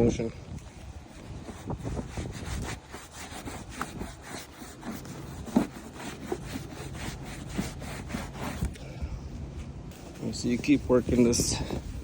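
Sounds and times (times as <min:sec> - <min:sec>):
cloth rubbing on plastic lens: 0:01.1 - 0:08.8.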